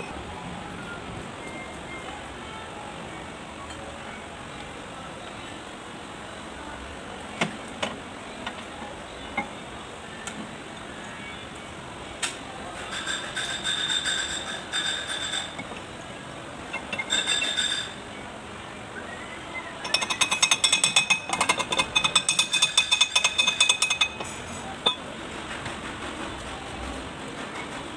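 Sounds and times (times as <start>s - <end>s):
metal parts clinking: 16.7s - 18.0s.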